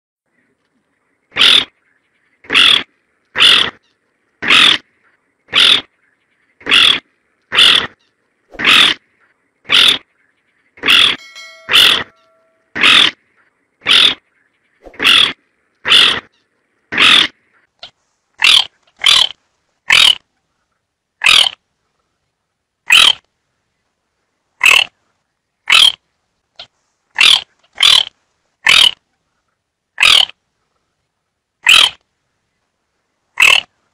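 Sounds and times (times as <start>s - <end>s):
bird calling: 10.8s - 13.1s.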